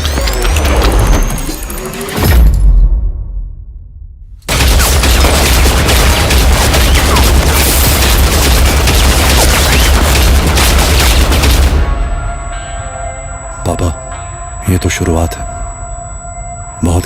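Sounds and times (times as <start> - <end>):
heavy automatic gunfire: 4.5 - 12.0.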